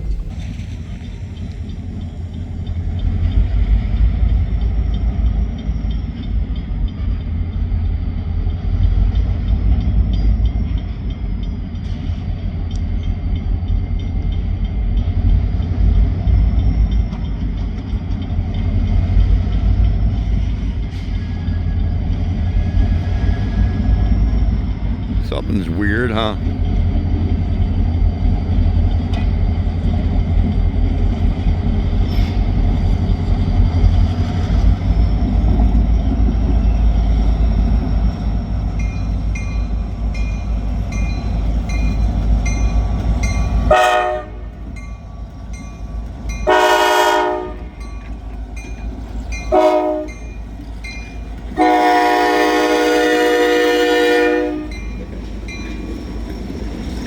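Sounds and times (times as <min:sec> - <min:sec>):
low rumble: 0:00.0 - 0:02.7
locomotive horn blasts: 0:43.7 - 0:44.6, 0:46.5 - 0:47.8, 0:49.5 - 0:50.2, 0:51.6 - 0:54.8.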